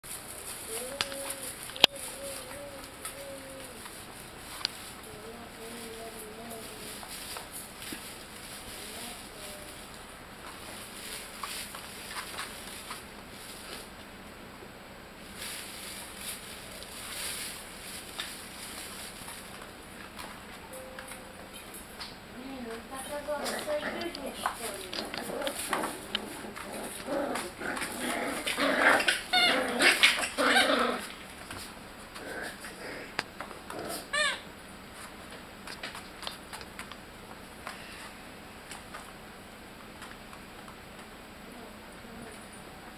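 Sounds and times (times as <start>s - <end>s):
puppy paws pattering and scrabbling: 0.0s - 14.1s, 15.2s - 39.2s
puppy yelp: 28.9s - 31.0s, 34.1s - 34.4s.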